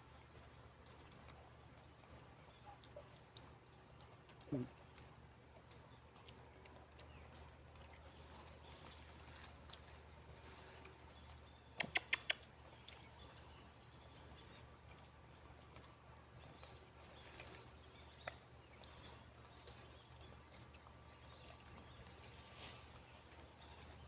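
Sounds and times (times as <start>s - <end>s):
sharp clicks: 11.8s - 12.5s.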